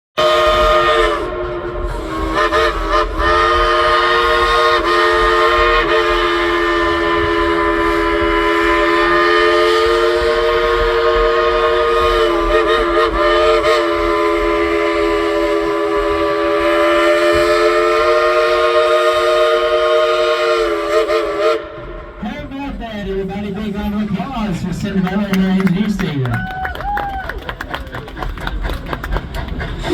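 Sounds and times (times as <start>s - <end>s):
steam locomotive chime whistle: 0.2s - 22.2s.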